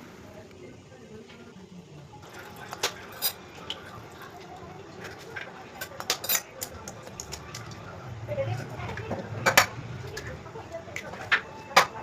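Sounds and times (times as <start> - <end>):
utensils clinking against cookware: 2.2 - 4.4, 5.0 - 7.7.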